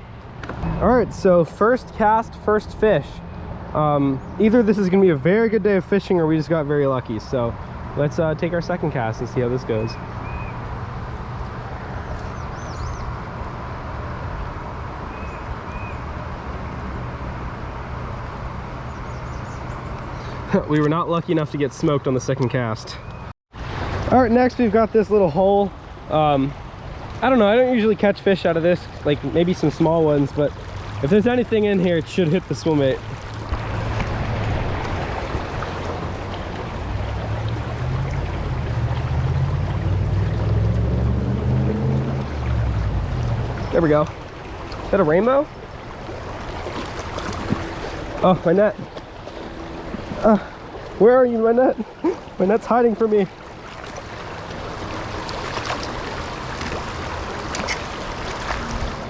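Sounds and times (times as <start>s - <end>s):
bird chirping: 9.9s - 10.6s, 11.7s - 13.2s
creek water rushing: 23.6s - 59.0s.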